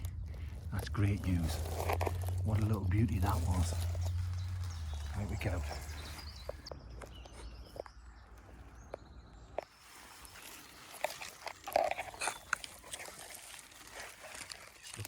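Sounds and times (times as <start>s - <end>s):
footsteps through rustling leaves: 0.0s - 6.7s, 9.7s - 15.0s
twigs snapping: 0.0s - 7.9s, 8.8s - 15.0s.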